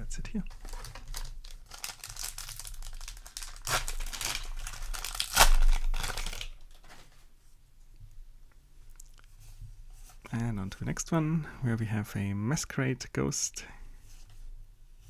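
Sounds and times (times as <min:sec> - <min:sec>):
foil wrapper crinkling and tearing: 0:00.5 - 0:07.2.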